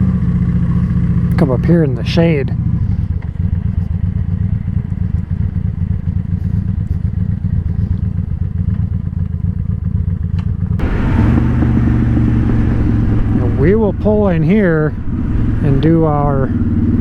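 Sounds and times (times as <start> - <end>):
motorcycle engine running: 0.0 - 17.0
rush of noise: 10.8 - 17.0.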